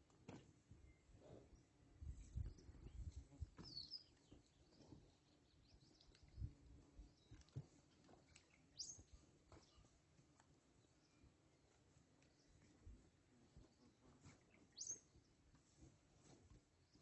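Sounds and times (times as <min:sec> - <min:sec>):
faint bird chirps: 0:00.8 - 0:11.3, 0:13.6 - 0:15.4.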